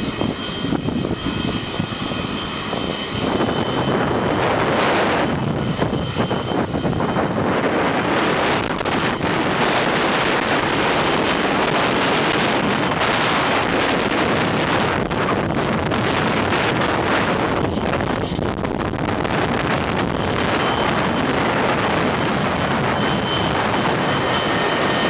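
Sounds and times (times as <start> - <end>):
jet engine noise: 0.0 - 25.0
wind buffeting microphone: 0.0 - 25.0.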